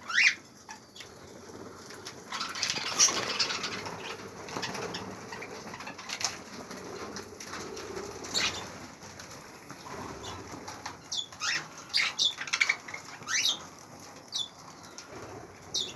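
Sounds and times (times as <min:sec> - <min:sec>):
budgerigars chirping: 0:00.1 - 0:00.4, 0:02.4 - 0:06.2, 0:08.3 - 0:08.7, 0:11.1 - 0:13.6
wings flapping: 0:01.0 - 0:15.9.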